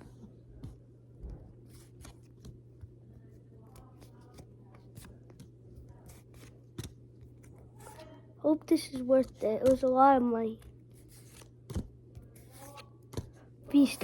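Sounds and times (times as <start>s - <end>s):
low steady hum: 0.0s - 14.0s
trading cards rustling and clicking: 3.6s - 14.0s.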